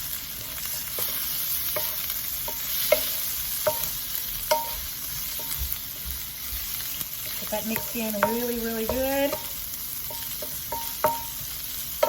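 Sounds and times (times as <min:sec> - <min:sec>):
food sizzling in a pan: 0:00.0 - 0:12.0
utensil knocking against pan: 0:07.6 - 0:11.4.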